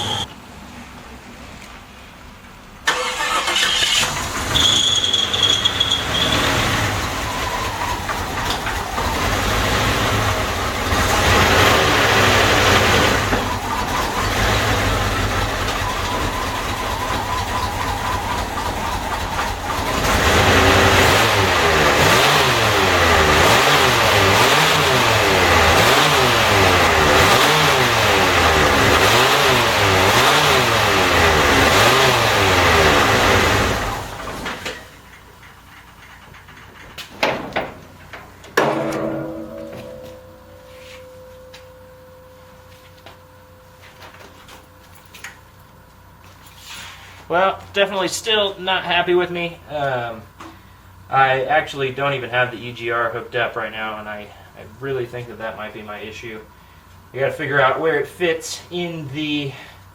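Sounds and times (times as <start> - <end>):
car engine running: 0.0 - 0.3, 3.0 - 48.6.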